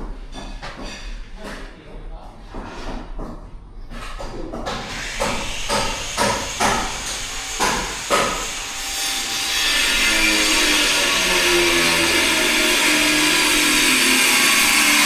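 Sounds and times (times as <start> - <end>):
hammer striking wood: 4.6 - 8.6.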